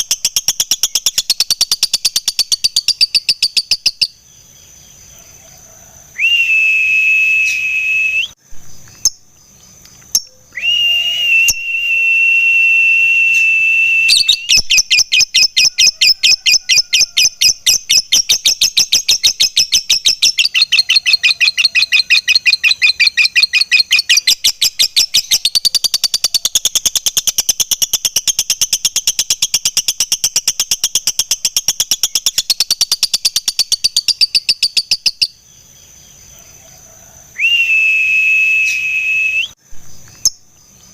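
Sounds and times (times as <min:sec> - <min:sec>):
lovebird whistling and chattering: 0:10.1 - 0:35.3.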